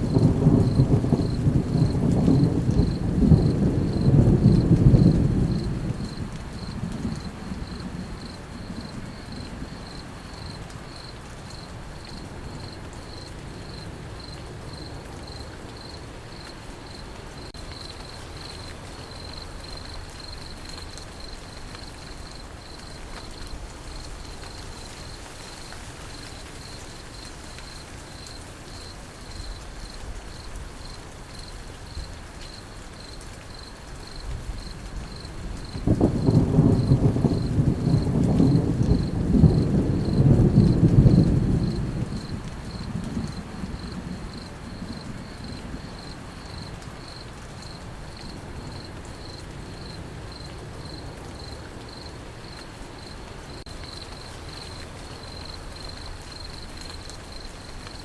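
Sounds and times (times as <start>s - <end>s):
thunder rumble: 0.0s - 15.0s, 34.1s - 54.5s
crickets chirping: 0.0s - 58.0s
soft rain: 0.0s - 58.0s.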